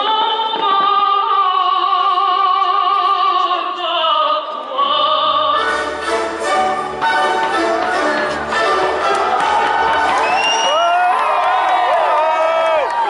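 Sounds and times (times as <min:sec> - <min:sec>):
operatic singing: 0:00.0 - 0:10.5
orchestral accompaniment: 0:05.4 - 0:10.4.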